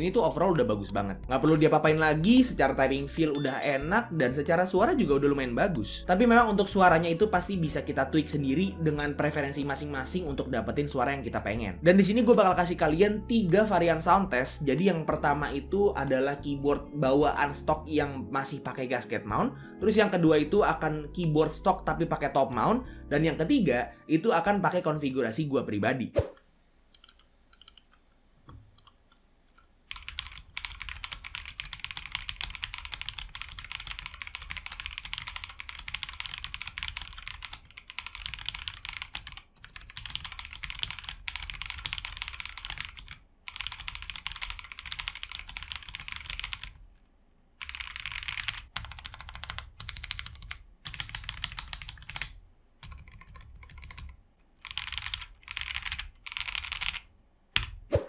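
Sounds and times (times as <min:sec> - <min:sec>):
mechanical keyboard typing: 0:27.0 - 0:27.9, 0:29.9 - 0:46.8, 0:47.6 - 0:57.7.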